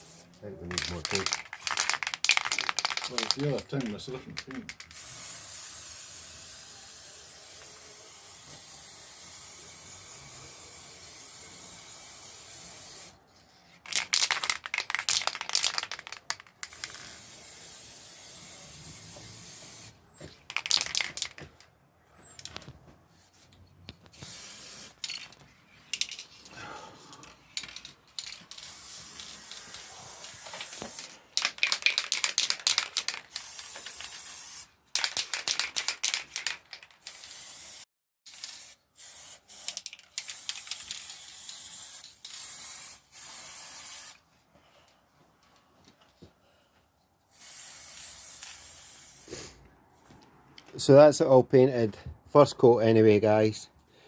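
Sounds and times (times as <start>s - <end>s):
spray can hissing: 0.0s - 3.4s, 4.7s - 13.2s, 13.9s - 21.4s, 24.1s - 25.3s, 27.6s - 44.2s, 47.3s - 49.6s
spray can rattling: 0.0s - 13.2s, 13.8s - 23.3s, 24.0s - 26.4s, 27.5s - 44.2s, 47.3s - 49.4s.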